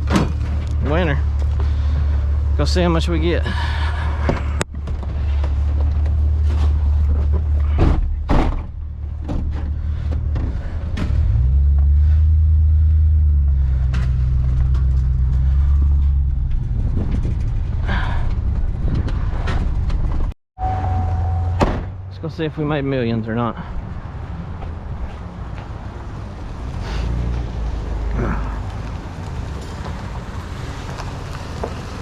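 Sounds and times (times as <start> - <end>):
vehicle engine humming: 0.0 - 7.8, 8.7 - 32.0.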